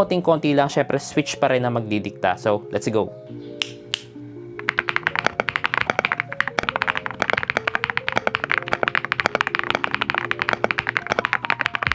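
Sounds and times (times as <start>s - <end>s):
mechanical keyboard typing: 4.6s - 11.9s.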